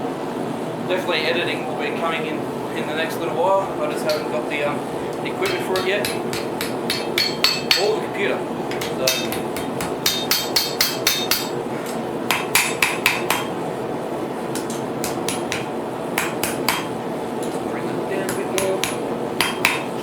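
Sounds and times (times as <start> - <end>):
forge blower rushing: 1.6 - 20.0
hammer striking steel on anvil: 4.0 - 4.3, 5.4 - 8.0, 8.7 - 13.6, 14.5 - 17.0, 18.2 - 20.0.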